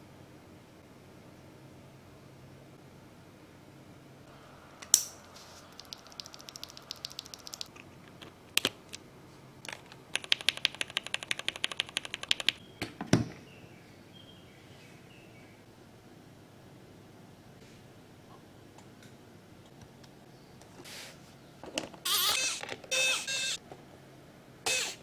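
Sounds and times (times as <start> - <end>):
rapid keyboard typing: 5.6 - 7.8, 9.7 - 12.6.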